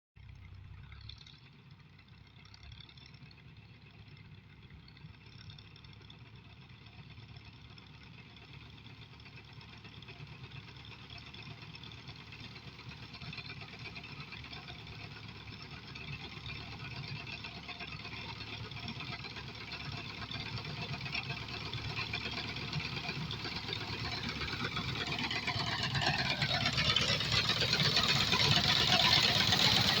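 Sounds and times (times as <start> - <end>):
harvester engine running: 8.6 - 30.0.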